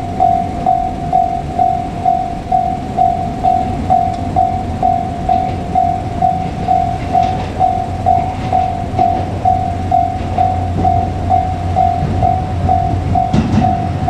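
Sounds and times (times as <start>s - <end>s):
level crossing warning bell: 0.0s - 14.0s
train rumbling: 0.0s - 14.0s.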